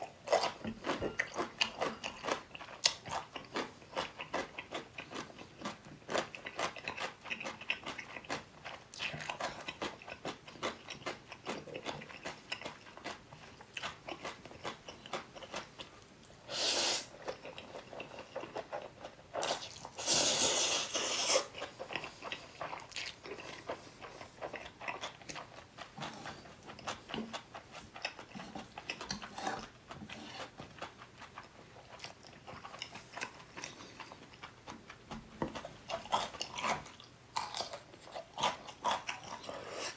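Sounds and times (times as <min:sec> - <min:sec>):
chewing and crunching: 0:00.0 - 0:16.4, 0:17.1 - 0:39.9
slurping noodles: 0:16.5 - 0:17.1, 0:19.4 - 0:21.6.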